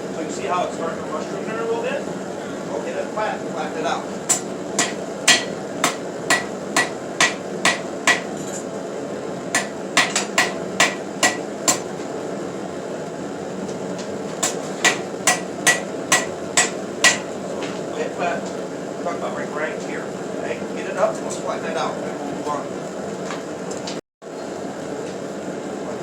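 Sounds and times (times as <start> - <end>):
hammer striking steel on anvil: 4.3 - 8.4, 9.6 - 11.9, 14.4 - 17.4.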